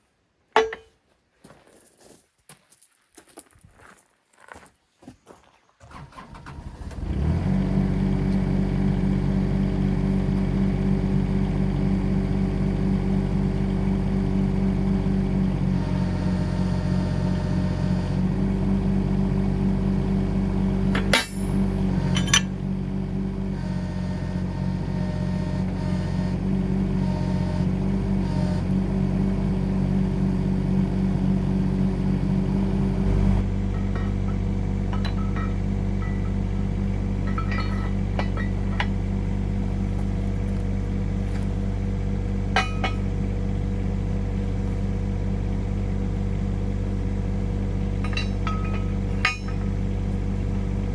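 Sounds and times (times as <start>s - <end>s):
sharp metal knocks: 0.6s - 0.9s, 21.0s - 22.5s
excavator engine running: 5.8s - 50.9s.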